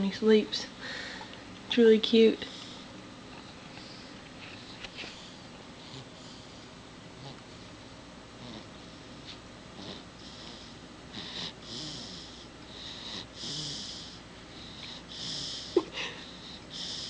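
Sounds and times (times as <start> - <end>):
baby snoring: 7.2 - 7.4, 8.4 - 9.0, 9.8 - 14.2, 14.8 - 17.0.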